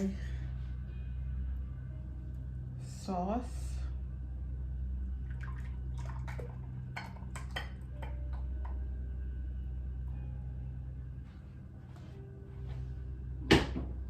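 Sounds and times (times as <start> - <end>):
low hum: 0.0 - 14.0
utensils and dishes clinking: 7.0 - 8.5.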